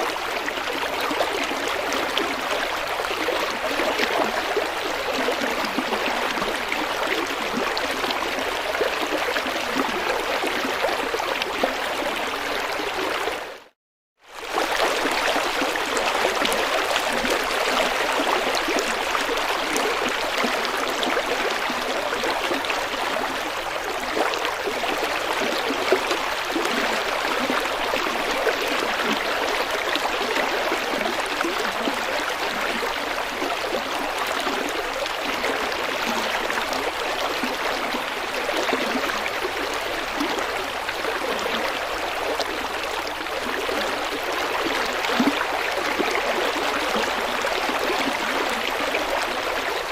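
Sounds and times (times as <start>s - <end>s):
river water flowing over stones: 14.3s - 49.9s.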